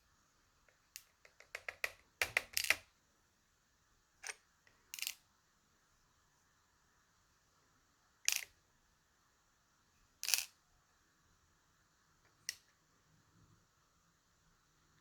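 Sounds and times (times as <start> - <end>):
small lock pins clicking: 1.0 - 2.9, 5.0 - 5.2.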